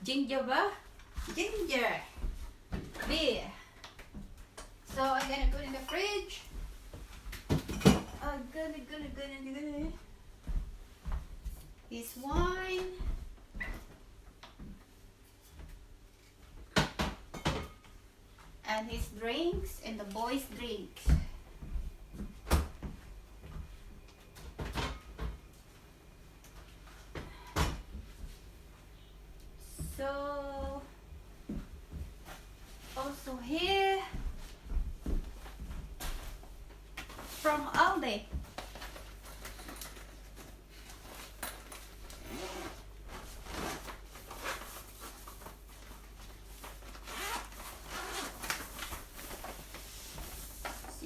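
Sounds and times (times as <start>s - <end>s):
plastic bags rustling: 37.1s - 51.0s.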